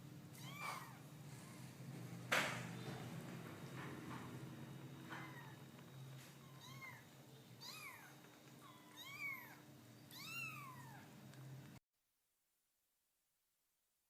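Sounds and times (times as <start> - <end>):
cat meowing: 0.3 - 1.1, 6.4 - 11.1.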